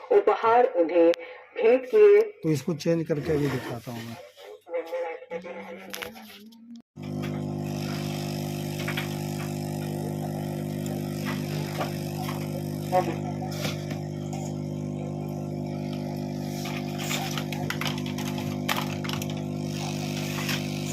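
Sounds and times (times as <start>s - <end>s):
electrical hum from speaker: 7.0s - 20.9s.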